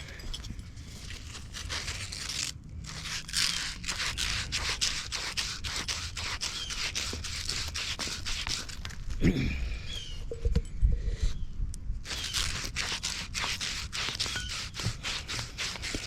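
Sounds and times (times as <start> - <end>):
wire brush scrubbing pipe: 0.8 - 9.0, 12.0 - 16.0.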